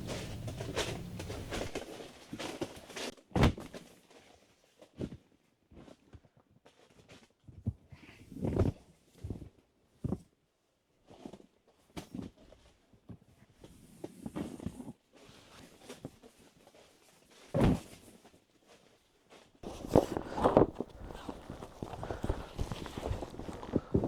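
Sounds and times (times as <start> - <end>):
soft knocks and thuds: 19.6 - 24.0.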